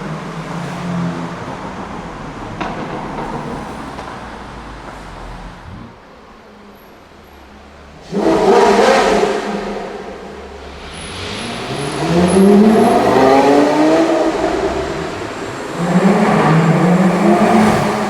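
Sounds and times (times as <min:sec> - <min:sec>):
supercar engines in tunnel: 0:00.0 - 0:18.0.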